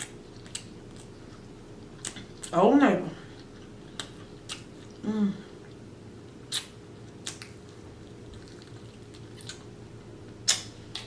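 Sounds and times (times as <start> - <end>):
wet mouth eating sounds: 0.0 - 2.6, 3.3 - 5.8, 6.4 - 11.0.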